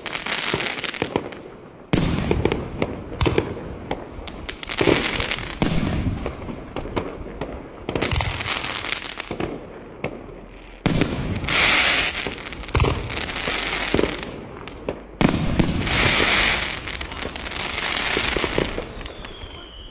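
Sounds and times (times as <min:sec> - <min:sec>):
fireworks bangs: 0:00.0 - 0:19.9
fireworks crackling hiss: 0:00.0 - 0:19.9
small fireworks pops: 0:00.0 - 0:19.9.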